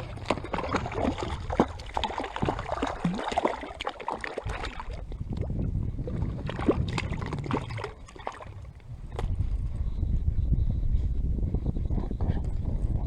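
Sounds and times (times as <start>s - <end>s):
lake water sloshing and splashing: 0.0s - 9.8s
wind rumble on microphone: 0.0s - 13.0s.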